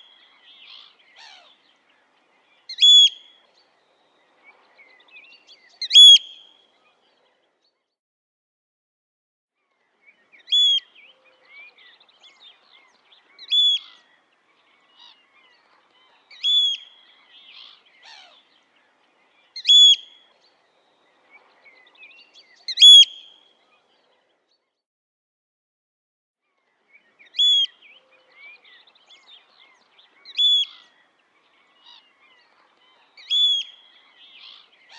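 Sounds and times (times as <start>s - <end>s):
faint bird chirps: 0.0s - 7.8s, 9.6s - 24.7s, 26.6s - 34.9s
oystercatcher piping calls: 2.7s - 3.3s, 5.8s - 6.4s, 10.5s - 10.9s, 12.8s - 14.1s, 15.0s - 18.5s, 19.6s - 20.2s, 22.7s - 23.3s, 27.2s - 34.9s.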